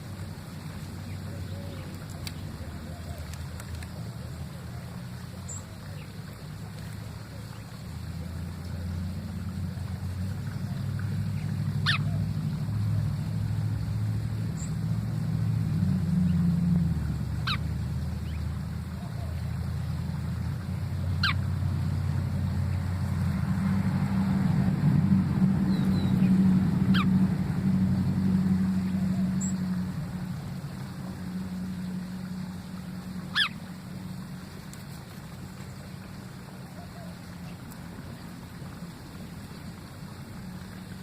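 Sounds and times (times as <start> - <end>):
bird whistled calls: 11.8 - 12.2, 33.3 - 33.6.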